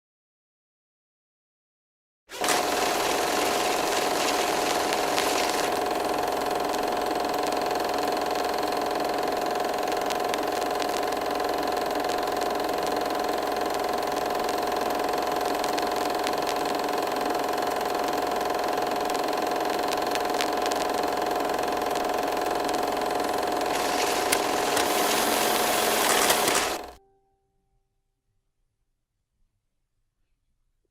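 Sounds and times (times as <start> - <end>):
film projector whirring: 2.3 - 27.0.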